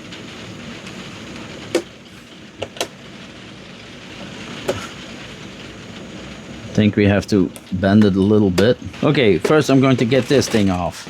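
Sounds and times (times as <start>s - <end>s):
steady low hum: 0.0s - 11.0s
plastic parts clicking: 2.6s - 3.0s.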